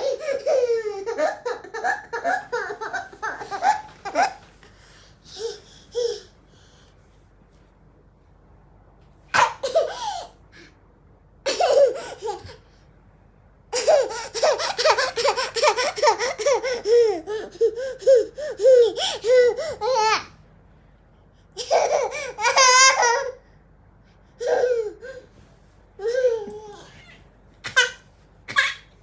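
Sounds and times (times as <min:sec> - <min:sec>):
toddler giggling: 0:00.0 - 0:04.6, 0:26.0 - 0:28.9.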